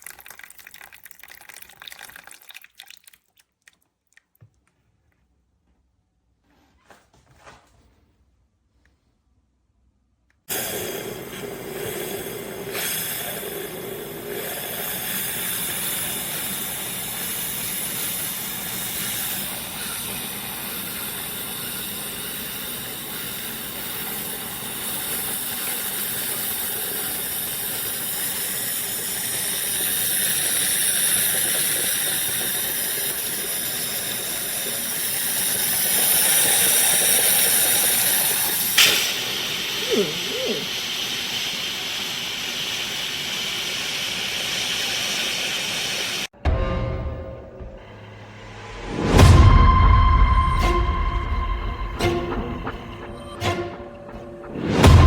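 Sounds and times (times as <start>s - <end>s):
coffee maker steaming hiss: 10.5s - 46.3s, 49.1s - 55.0s.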